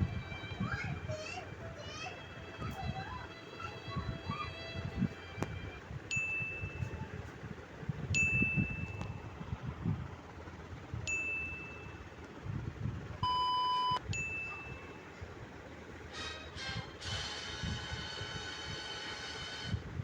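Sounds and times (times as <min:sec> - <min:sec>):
short steady beep: 0:13.2 - 0:14.9.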